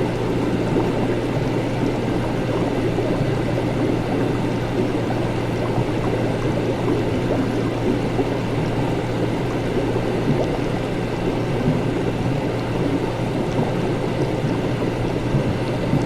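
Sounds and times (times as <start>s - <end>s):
liquid bubbling: 0.0s - 16.0s
steady low hum: 0.0s - 16.0s.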